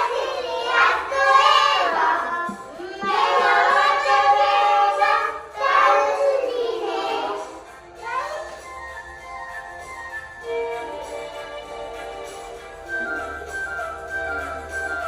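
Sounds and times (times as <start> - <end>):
young children singing: 0.0 - 8.7.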